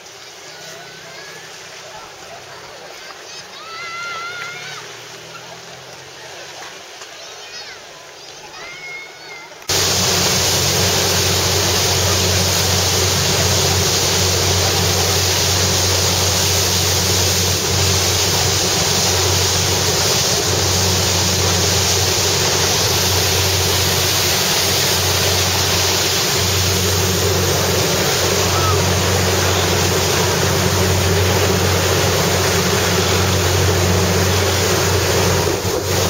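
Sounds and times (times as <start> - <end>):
water rushing along hull: 0.0 - 36.0
low engine drone: 9.7 - 36.0.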